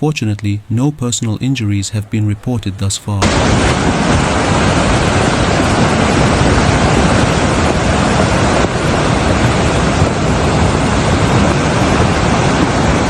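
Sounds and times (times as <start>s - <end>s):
floodwater rushing: 3.2s - 13.0s.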